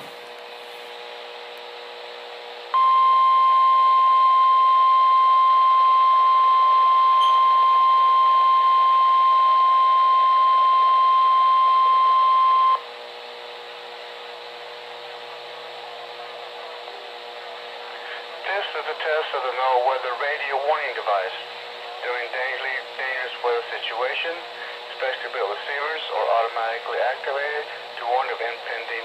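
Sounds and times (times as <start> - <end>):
steady high alarm beep: 2.8 - 12.8
radio hiss: 17.4 - 29.0.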